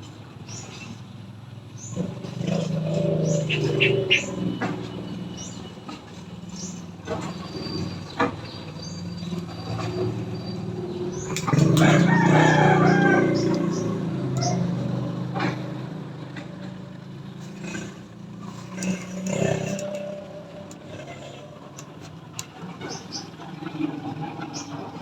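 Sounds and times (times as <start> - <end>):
vehicle engine hum: 0.0 - 25.0
rooster crowing: 11.5 - 14.8.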